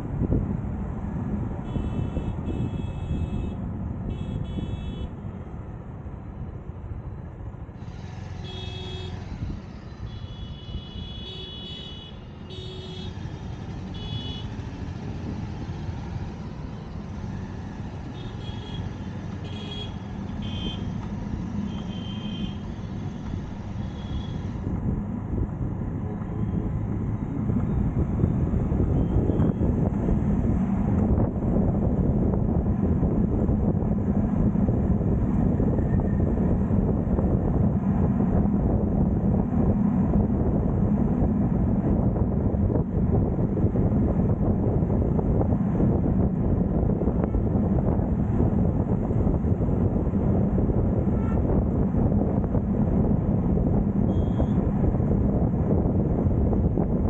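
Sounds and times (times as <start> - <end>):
traffic rumble and road noise: 0.0 - 57.0
car horns honking: 1.6 - 5.2, 8.4 - 9.3, 10.0 - 13.3, 13.9 - 14.6, 18.1 - 21.0, 21.6 - 22.7, 23.8 - 24.5, 54.1 - 54.6.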